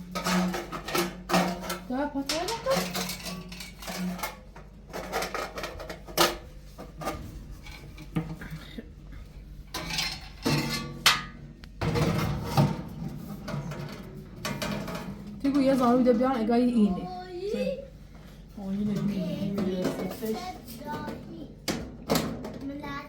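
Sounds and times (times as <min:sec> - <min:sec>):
knocks and clatter: 0:09.7 - 0:16.0.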